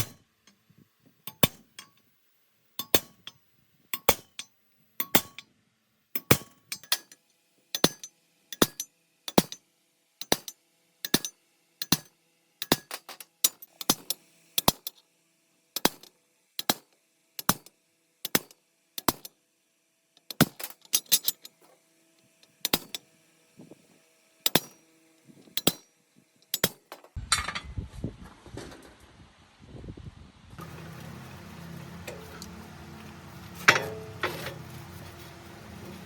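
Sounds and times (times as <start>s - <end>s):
sharp metallic taps and knocks: 1.3s - 2.0s, 2.8s - 5.4s, 6.2s - 7.2s, 7.8s - 9.6s, 10.2s - 15.0s, 15.8s - 17.7s, 18.3s - 19.3s, 22.6s - 23.0s, 24.5s - 24.8s, 25.6s - 25.9s, 26.5s - 27.5s.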